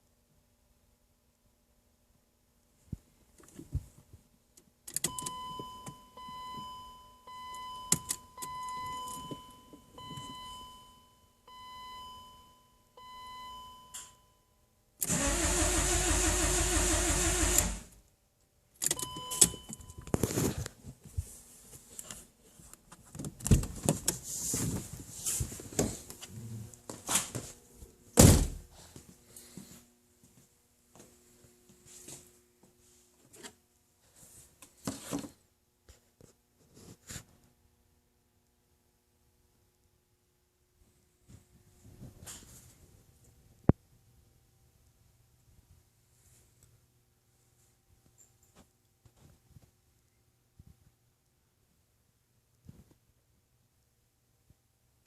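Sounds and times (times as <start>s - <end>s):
car engine cranking: 15.0s - 17.9s.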